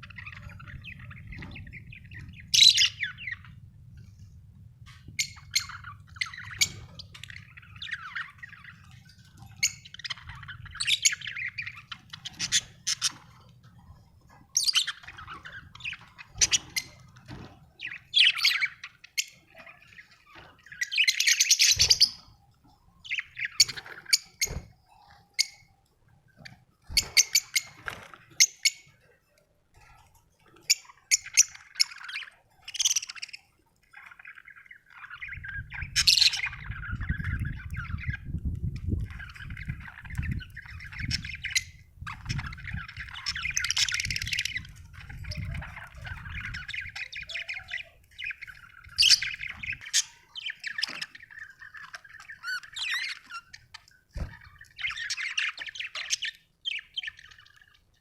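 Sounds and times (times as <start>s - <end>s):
budgerigars chirping: 0.0s - 3.6s, 5.0s - 29.0s, 29.8s - 57.9s.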